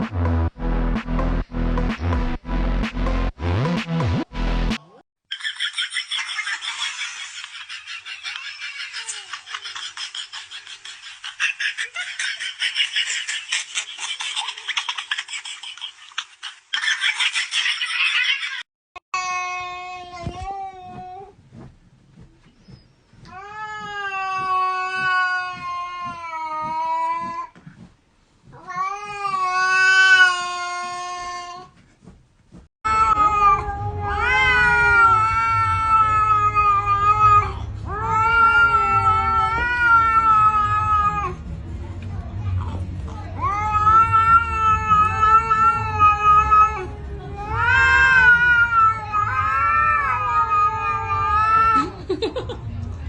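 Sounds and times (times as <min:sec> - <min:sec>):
cat yowling: 0:32.9 - 0:41.4, 0:43.4 - 0:51.8.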